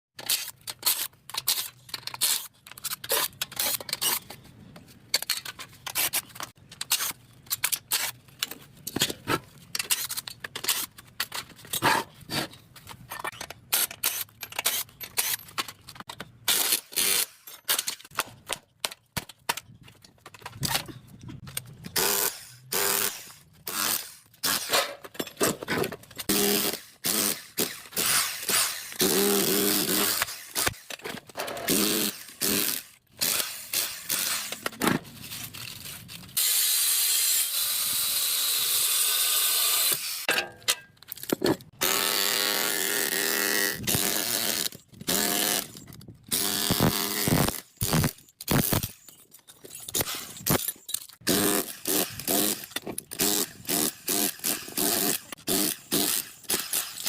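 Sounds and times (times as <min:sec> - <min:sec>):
tools clanking on metal: 0:24.7 - 0:26.3, 0:40.3 - 0:41.7.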